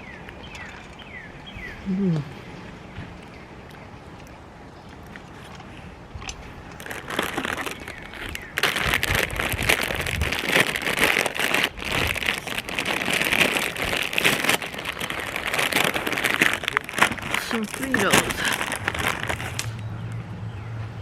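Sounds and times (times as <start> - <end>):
plastic bag crinkling: 6.7 - 19.8.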